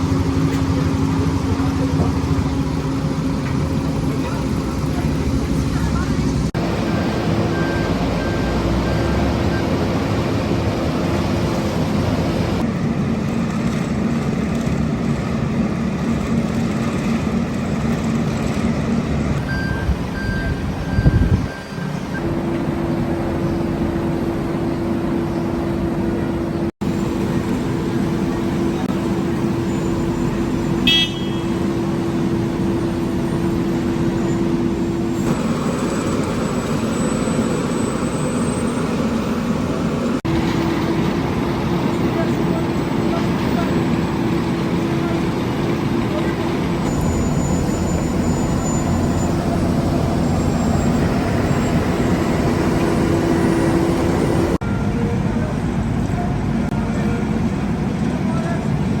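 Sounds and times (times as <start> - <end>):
loud rumble: 0.0 - 21.5, 22.2 - 59.0
diesel engines droning: 0.0 - 59.0
pulsed beeping: 41.7 - 54.6.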